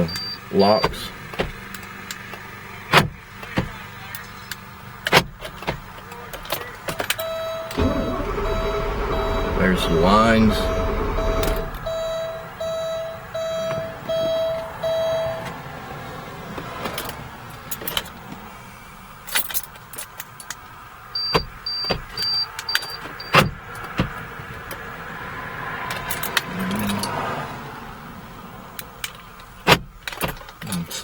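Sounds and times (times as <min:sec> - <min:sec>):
car alarm pulsing tone: 0:07.2 - 0:15.4
short high beeps: 0:07.8 - 0:13.6.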